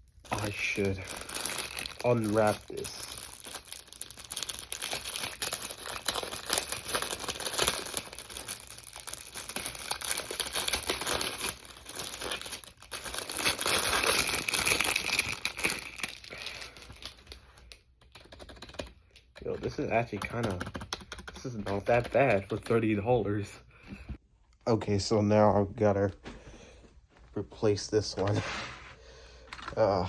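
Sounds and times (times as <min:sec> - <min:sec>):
wrapping crinkling and tearing: 0:00.0 - 0:20.6.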